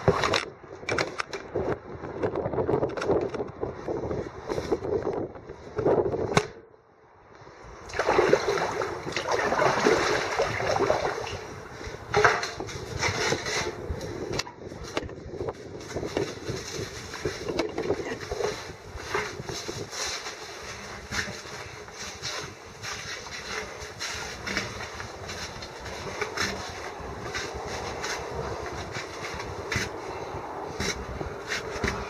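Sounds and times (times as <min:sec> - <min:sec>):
paddle splashes: 0:07.9 - 0:11.6
river water churning: 0:07.9 - 0:11.7.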